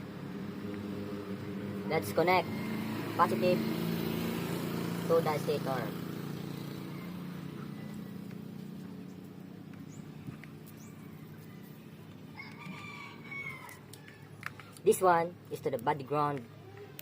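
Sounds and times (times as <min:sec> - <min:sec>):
rooster crowing: 0:06.5 - 0:08.2, 0:12.3 - 0:14.3.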